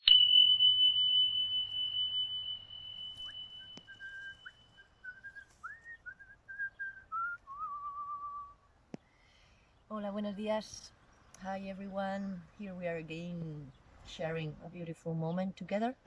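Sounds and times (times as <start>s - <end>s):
high chime tone: 0.0s - 5.6s
whistled tune: 0.0s - 8.6s.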